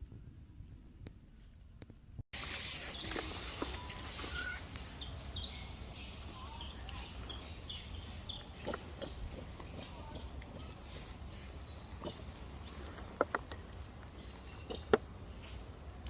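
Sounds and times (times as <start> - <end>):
bird chirps: 2.4 - 13.1, 14.1 - 16.0.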